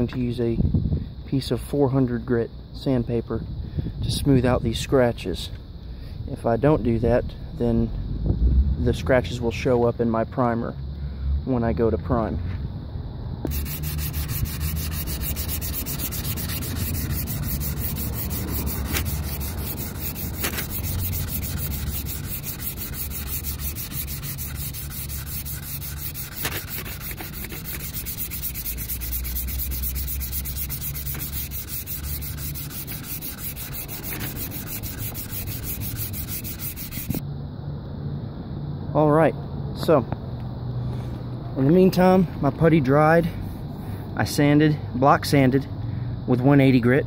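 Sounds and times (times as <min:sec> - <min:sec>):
sandpaper rubbing on bumper: 0:13.5 - 0:37.2.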